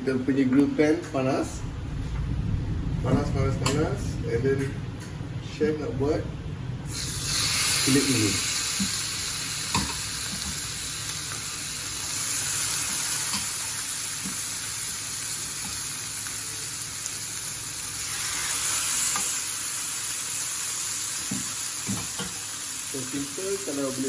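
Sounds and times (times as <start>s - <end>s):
chicken sizzling on a grill pan: 6.9s - 24.0s.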